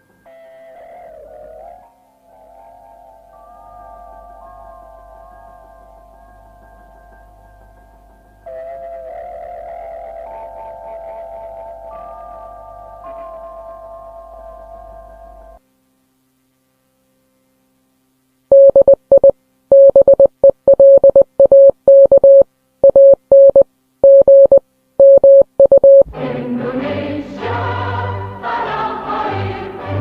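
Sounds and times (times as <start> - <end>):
electronic morse beeps: 18.5 - 26.1
choir-like music: 26.1 - 30.0.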